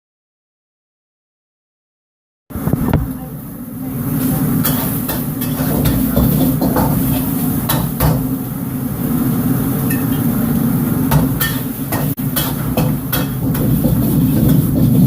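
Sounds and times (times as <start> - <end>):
wok burner roaring: 2.5 - 15.0
metal ladle clanking on wok: 11.1 - 14.8.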